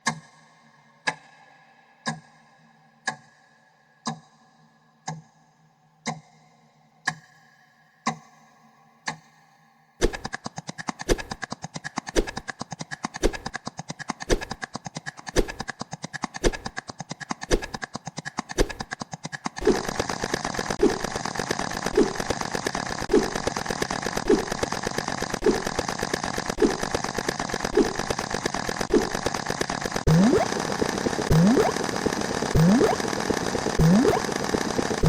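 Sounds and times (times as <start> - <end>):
louder tick: 19.6 - 35.0
ticking with ringing tone: 19.6 - 35.0.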